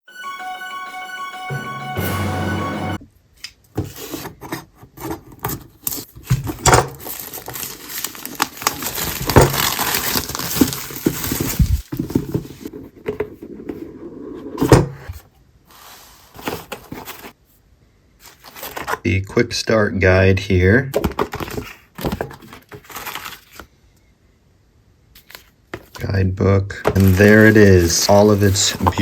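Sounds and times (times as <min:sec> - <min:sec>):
cardboard packaging rustling: 0:05.0 - 0:12.9, 0:16.2 - 0:17.4, 0:18.2 - 0:19.0, 0:21.0 - 0:23.7, 0:26.8 - 0:29.0.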